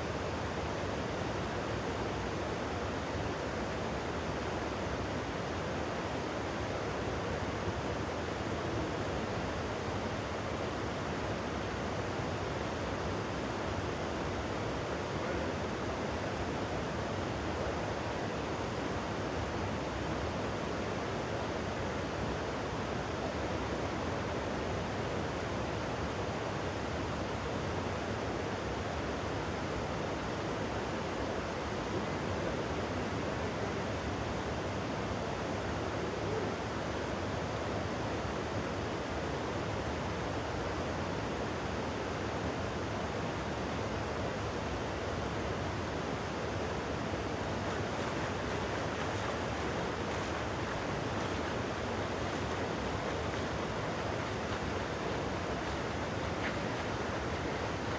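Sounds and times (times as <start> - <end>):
rain: 0.0 - 57.9
river water rushing: 29.1 - 57.9.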